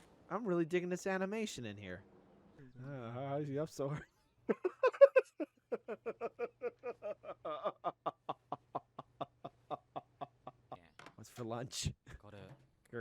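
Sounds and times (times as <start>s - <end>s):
person laughing: 4.5s - 10.8s.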